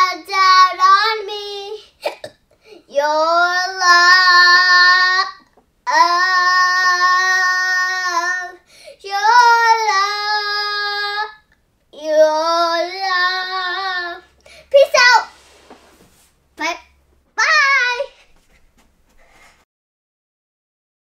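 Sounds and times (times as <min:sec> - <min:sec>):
girl singing unaccompanied: 0:00.0 - 0:15.7, 0:16.6 - 0:18.3
short breath: 0:08.7 - 0:09.0, 0:14.4 - 0:14.7, 0:18.1 - 0:19.6.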